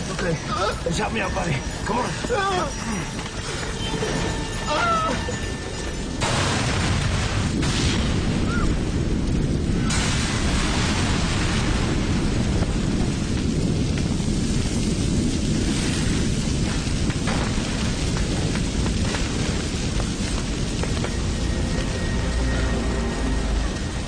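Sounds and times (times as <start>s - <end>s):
deep rumble of burning car: 0.0s - 24.0s
car explosion blast: 6.2s - 13.8s.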